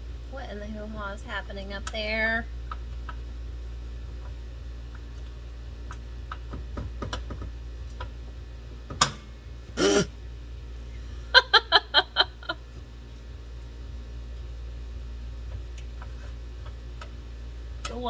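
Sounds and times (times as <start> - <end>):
man laughing: 11.2 - 12.6.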